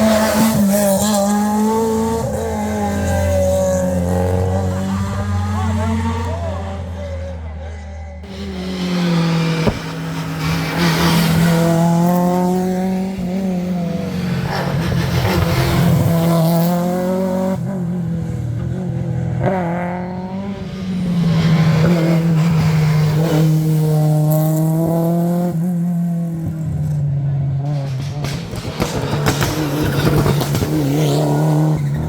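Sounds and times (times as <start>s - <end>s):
rally car engine at high revs: 0.0s - 32.0s
sharp crack: 9.2s - 12.0s.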